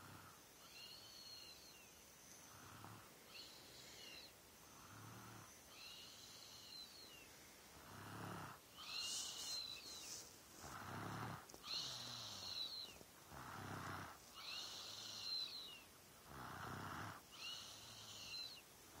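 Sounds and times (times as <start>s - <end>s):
low rattling snore: 7.8s - 8.6s, 10.6s - 12.6s, 13.3s - 15.4s, 16.2s - 18.3s
high thin whistling: 8.8s - 10.4s.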